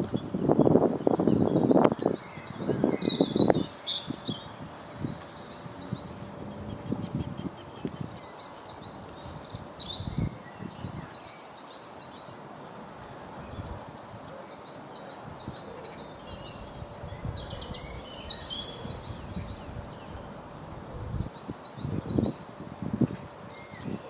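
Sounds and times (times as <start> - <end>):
low irregular noise: 0.0 - 24.0
outdoor background noise: 0.0 - 24.0
small birds chirping: 0.0 - 24.0.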